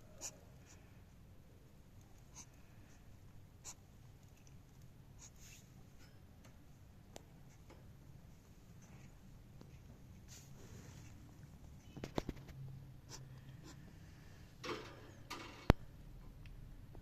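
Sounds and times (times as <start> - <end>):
faint scratches and ticks: 1.9 - 13.9.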